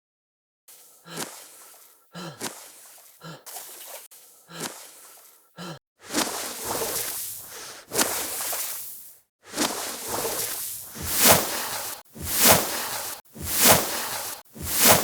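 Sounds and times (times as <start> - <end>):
person gasping: 0.7 - 7.9, 10.9 - 14.4
noisy breaths: 0.7 - 15.0.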